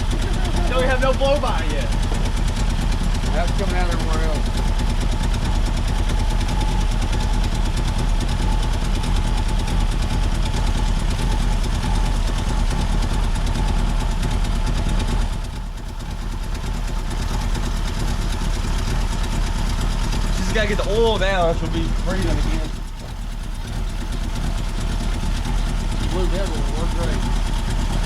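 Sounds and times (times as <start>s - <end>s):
car engine running flat out: 0.0s - 28.0s.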